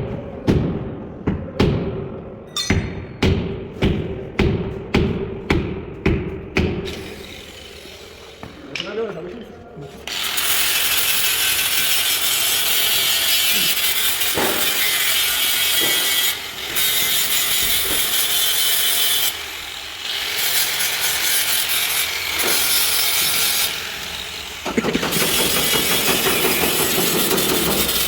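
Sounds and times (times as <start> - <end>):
power tool rasping hiss: 6.9 - 8.6.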